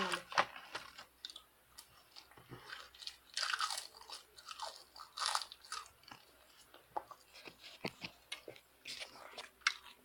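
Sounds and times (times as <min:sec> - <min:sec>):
person chewing crunchy food: 0:01.1 - 0:10.0.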